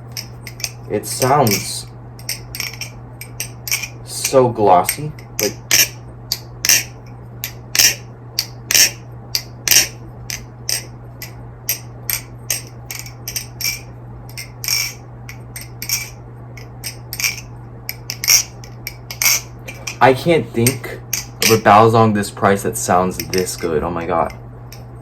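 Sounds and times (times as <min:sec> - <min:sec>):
faint low hum: 0:00.0 - 0:25.0
person speaking: 0:00.9 - 0:01.9, 0:04.0 - 0:05.8, 0:19.7 - 0:24.4
butterfly knife clacking: 0:04.9 - 0:20.0, 0:23.2 - 0:24.9.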